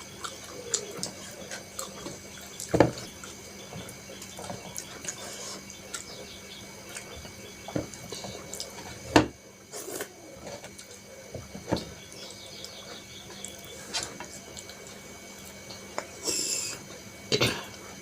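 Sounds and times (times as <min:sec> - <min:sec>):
wet chewing and mouth sounds: 0:00.0 - 0:06.2, 0:06.8 - 0:09.0, 0:12.2 - 0:17.0.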